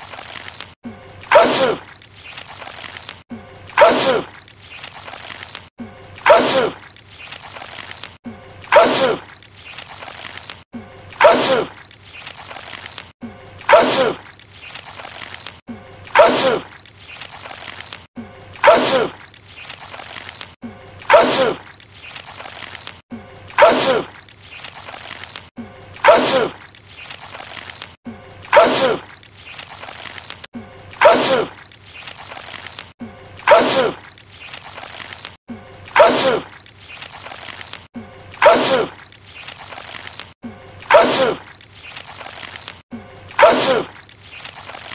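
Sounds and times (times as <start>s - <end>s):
man sneezing loudly: 28.5s - 29.0s, 40.9s - 41.4s, 43.4s - 43.9s.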